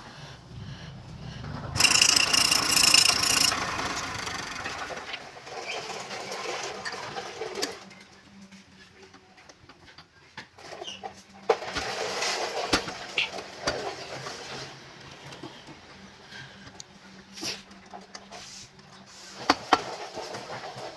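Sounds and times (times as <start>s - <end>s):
ringing squeal: 1.8s - 4.9s
lathe tool cutting wood: 1.8s - 5.1s.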